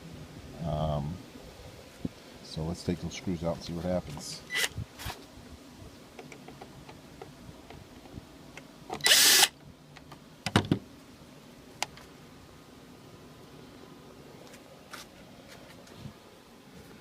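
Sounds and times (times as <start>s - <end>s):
power drill whirring: 9.0s - 9.5s.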